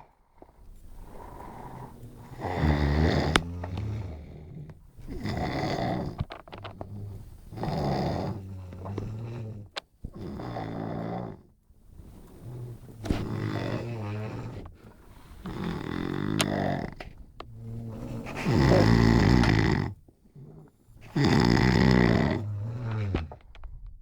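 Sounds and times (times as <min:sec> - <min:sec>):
person snoring deeply: 0:01.0 - 0:06.2, 0:15.3 - 0:23.4.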